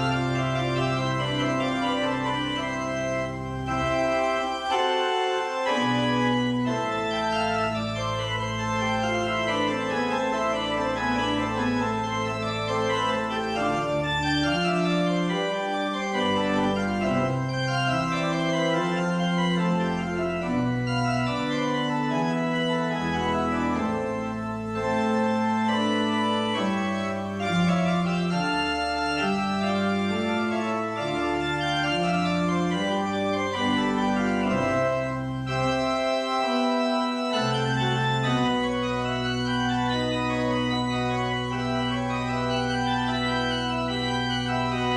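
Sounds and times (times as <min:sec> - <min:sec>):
organ playing sustained chords: 0:00.0 - 0:44.9.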